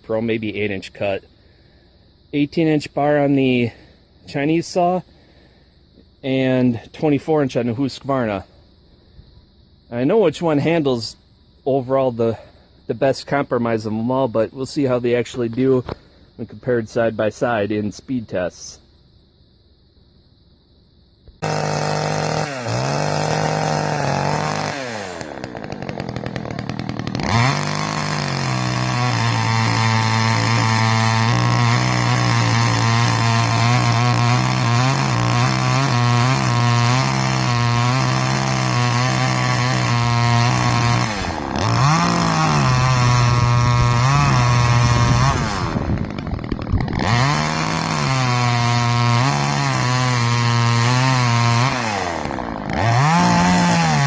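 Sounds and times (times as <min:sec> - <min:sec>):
chainsaw revving: 0:21.4 - 0:54.0.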